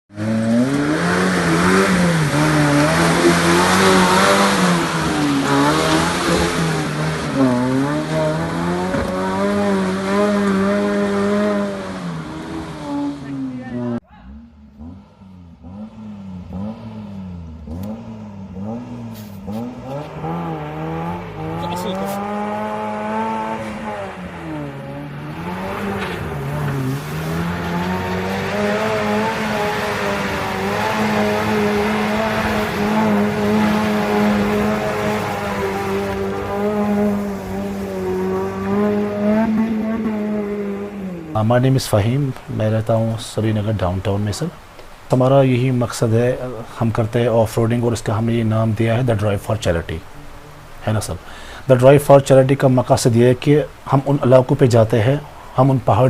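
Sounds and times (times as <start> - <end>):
vehicle engine revving: 0.1 - 43.8.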